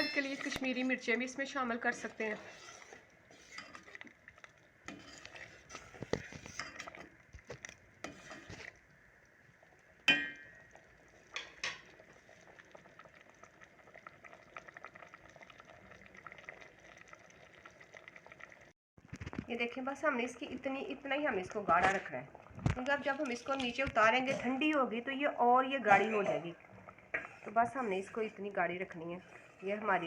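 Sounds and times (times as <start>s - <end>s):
spoon clinking against pot: 0.0s - 0.8s, 10.1s - 10.5s
metal spoon stirring in pot: 0.0s - 8.8s, 10.0s - 18.4s
thick sauce bubbling: 0.3s - 18.8s, 19.6s - 29.8s.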